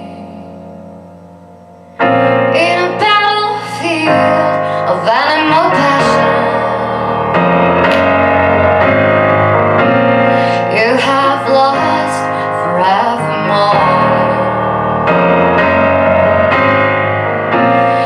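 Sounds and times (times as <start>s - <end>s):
woman singing: 0.0s - 0.8s, 2.4s - 7.4s, 10.5s - 15.0s
piano and keyboard accompaniment: 0.0s - 18.0s.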